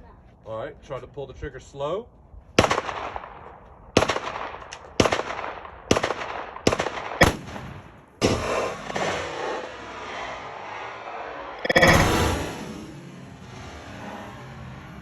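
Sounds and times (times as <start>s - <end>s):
rifle shots: 2.6s - 9.1s, 11.6s - 12.6s
explosion with rumbling: 11.6s - 12.7s.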